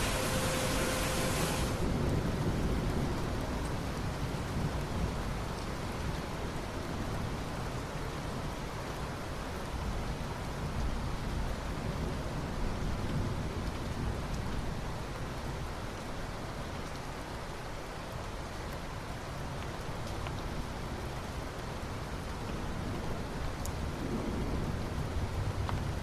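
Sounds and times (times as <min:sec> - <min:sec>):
steady rain falling: 0:00.0 - 0:26.0
sharp rain drop ticks: 0:25.3 - 0:26.0.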